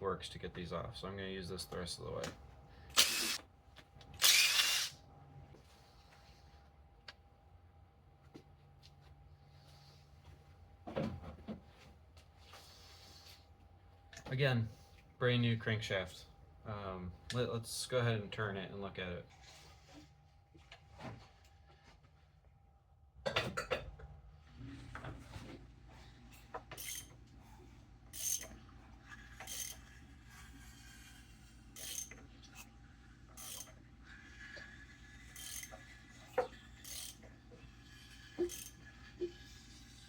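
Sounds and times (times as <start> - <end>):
ratchet wrench clicking: 3.0 - 3.4, 4.2 - 4.9, 26.8 - 27.1, 28.1 - 28.5, 29.4 - 29.8, 31.8 - 32.2, 33.4 - 33.7, 35.4 - 35.8, 36.8 - 37.2, 38.4 - 38.8.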